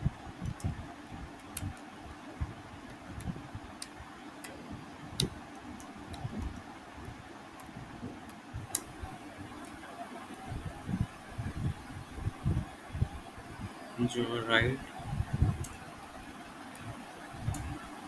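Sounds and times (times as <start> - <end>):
background hum: 0.0 - 18.0
keyboard and mouse clicks: 0.4 - 11.7, 15.1 - 15.9, 16.7 - 18.0.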